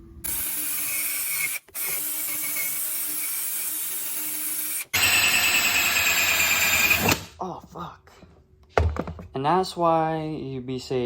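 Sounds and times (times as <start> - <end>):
high drill whine: 0.2 - 7.3.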